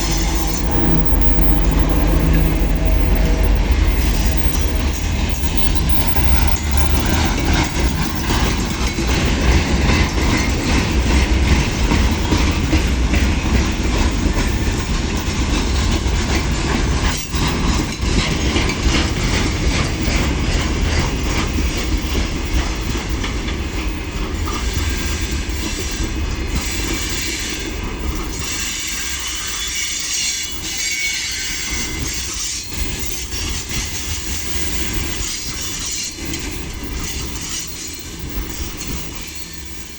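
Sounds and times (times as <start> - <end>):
heavy low rumble: 0.0 - 13.9
train wheels clattering over rail joints: 0.0 - 39.8
train wheels squealing: 0.0 - 39.9.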